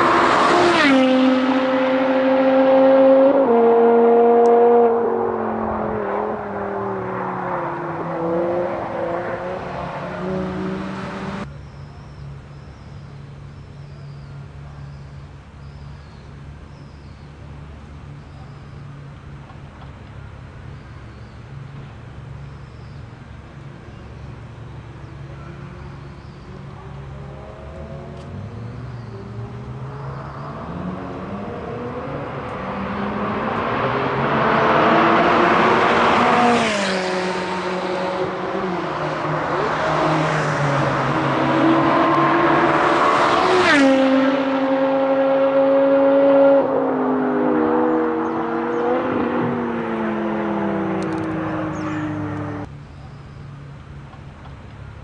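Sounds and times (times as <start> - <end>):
car engine accelerating hard: 0.0 - 11.5, 26.8 - 52.7.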